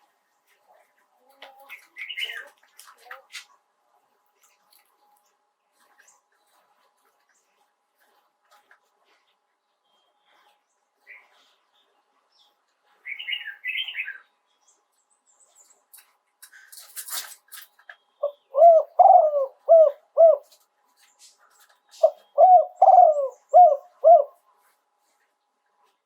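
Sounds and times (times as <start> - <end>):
dove cooing: 18.2 - 20.6, 22.0 - 24.4.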